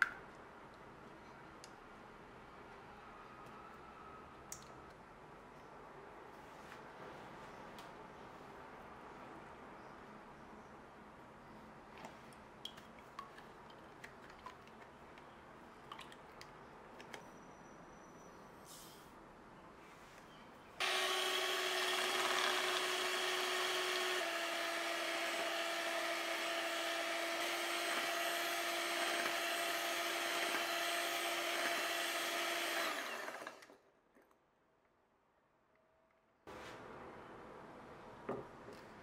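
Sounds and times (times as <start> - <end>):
kitchen appliance motor humming: 20.8 - 33.7.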